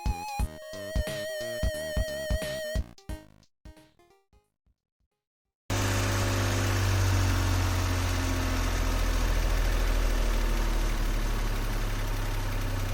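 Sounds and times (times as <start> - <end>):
van engine idling: 5.7 - 12.9.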